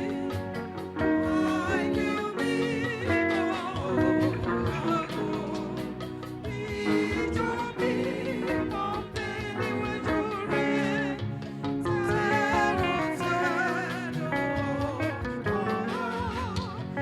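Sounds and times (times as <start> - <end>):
guitar: 0.0 - 17.0
people singing a hymn: 0.0 - 17.0.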